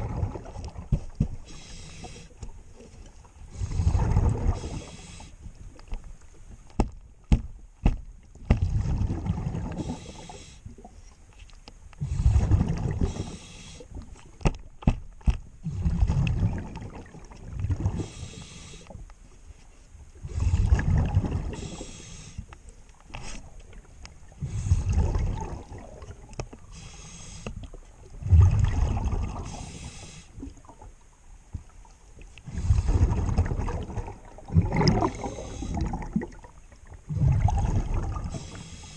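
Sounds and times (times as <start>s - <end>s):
exhaled bubbles gurgling: 0.0s - 2.2s, 3.5s - 5.3s, 8.5s - 11.0s, 12.0s - 13.7s, 15.6s - 18.4s, 20.2s - 22.0s, 24.3s - 27.0s, 27.6s - 31.0s, 32.4s - 38.9s
regulator inhale hiss: 1.4s - 2.4s, 4.6s - 5.4s, 9.8s - 10.7s, 13.0s - 14.0s, 17.9s - 19.0s, 21.5s - 22.5s, 26.6s - 27.7s, 29.4s - 30.4s, 35.1s - 35.8s, 38.3s - 38.9s.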